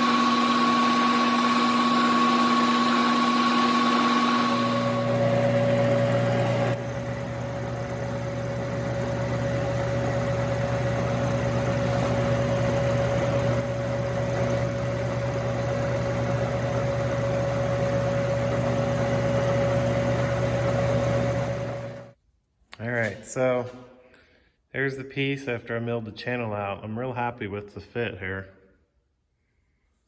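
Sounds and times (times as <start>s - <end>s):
mill cutter cutting metal: 4.4s - 22.1s
electric hum and whir: 4.5s - 22.2s.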